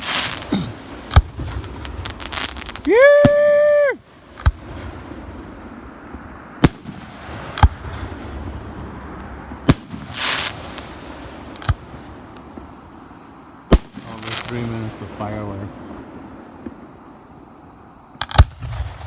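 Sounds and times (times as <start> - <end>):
fireworks bangs: 0.0 - 12.8, 13.7 - 16.8, 18.2 - 19.0
faint insect chirring: 0.0 - 19.0
fireworks crackling hiss: 0.0 - 19.0
people cheering: 2.8 - 4.0.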